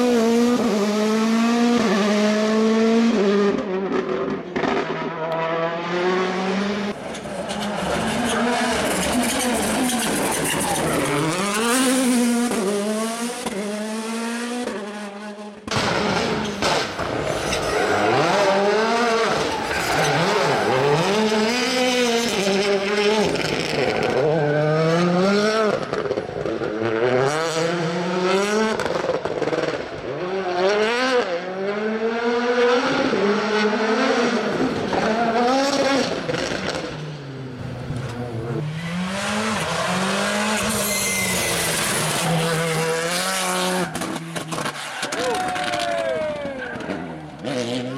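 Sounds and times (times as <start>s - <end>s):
rally car engines accelerating: 0.0s - 47.9s.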